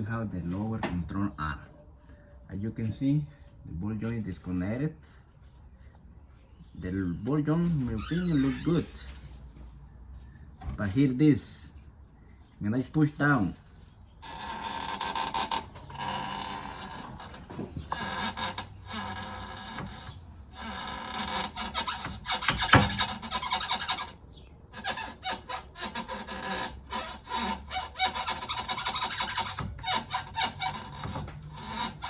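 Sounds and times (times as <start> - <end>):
rubber bushing creaking and squeaking: 7.4 - 9.5, 13.2 - 32.0.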